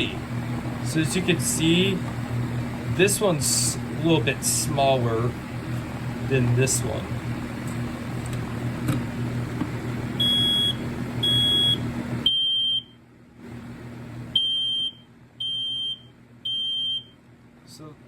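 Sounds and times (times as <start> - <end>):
smoke alarm beeping: 10.2 - 13.0, 14.4 - 17.2.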